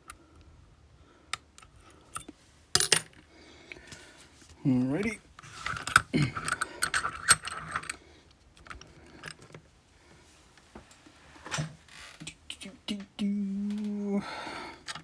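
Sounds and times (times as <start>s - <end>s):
person humming: 12.2s - 14.8s.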